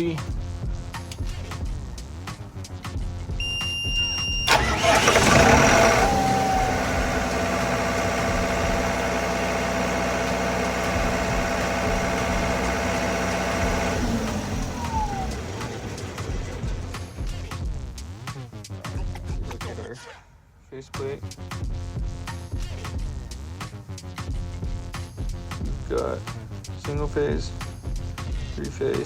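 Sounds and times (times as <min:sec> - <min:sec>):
brief high tone: 0:03.4 - 0:04.6
diesel generator engine running: 0:03.4 - 0:17.3.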